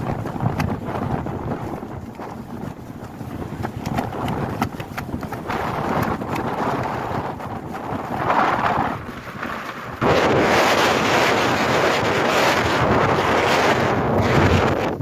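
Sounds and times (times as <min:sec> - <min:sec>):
plastic rain cape flapping: 0:00.0 - 0:15.0
wind gusting across microphone: 0:00.0 - 0:15.0.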